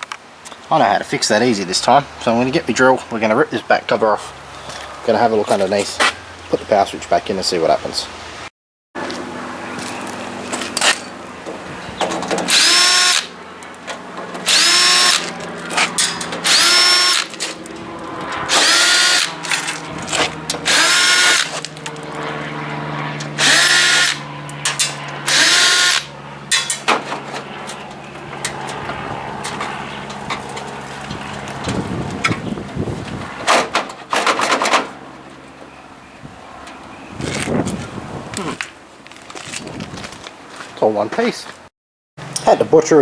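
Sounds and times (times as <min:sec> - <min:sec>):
power drill driving screws: 0:12.5 - 0:13.3, 0:14.4 - 0:15.3, 0:16.4 - 0:17.4, 0:18.5 - 0:19.7, 0:20.6 - 0:21.6, 0:23.4 - 0:24.2, 0:25.3 - 0:26.1.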